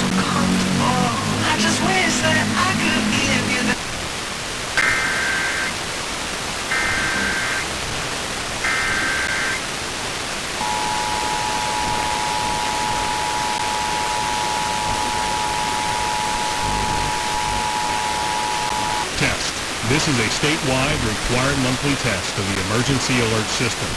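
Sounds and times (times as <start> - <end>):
fm static hiss: 0.0 - 23.9
warbling digital data bursts: 4.8 - 5.8, 6.7 - 7.8, 8.6 - 9.6, 10.6 - 19.1
two-tone attention signal: 6.7 - 7.7, 10.6 - 19.1.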